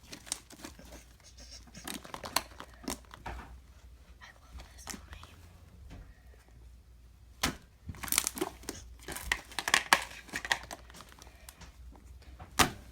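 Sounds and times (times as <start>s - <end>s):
slime crackling and popping: 7.4s - 11.3s.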